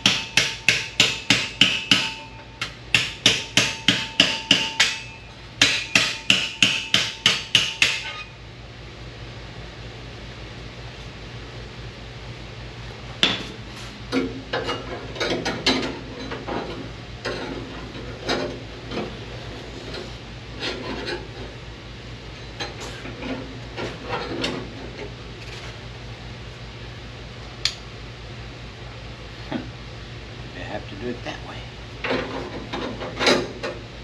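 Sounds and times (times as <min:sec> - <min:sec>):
steady low hum: 0:00.0 - 0:34.0
sheet metal clanks and scrapes: 0:19.8 - 0:21.6, 0:32.0 - 0:33.8.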